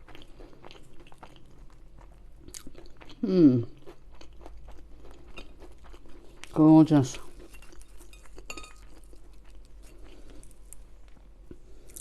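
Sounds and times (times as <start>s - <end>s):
crunchy chewing: 0.0s - 6.6s, 7.2s - 12.0s
person humming: 3.2s - 3.7s.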